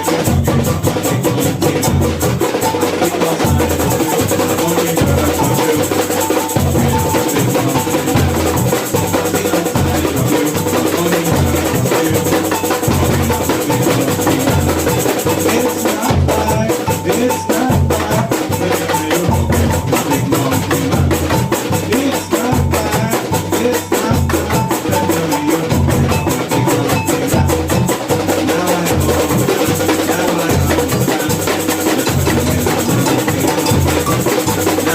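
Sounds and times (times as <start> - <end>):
rapid high percussion: 0.0 - 34.9.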